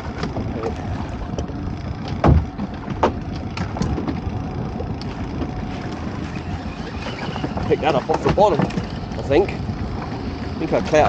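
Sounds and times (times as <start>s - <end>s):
choppy water: 0.0s - 11.0s
wind on microphone: 0.0s - 11.0s
heavy thump: 2.2s - 3.2s.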